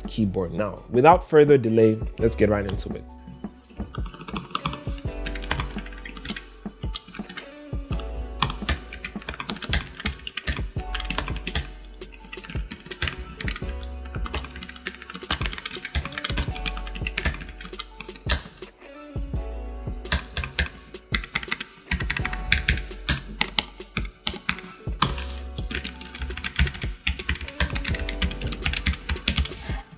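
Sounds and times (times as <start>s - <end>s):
background music: 0.0s - 29.9s
fast mechanical keyboard typing: 3.9s - 18.7s, 20.1s - 29.7s.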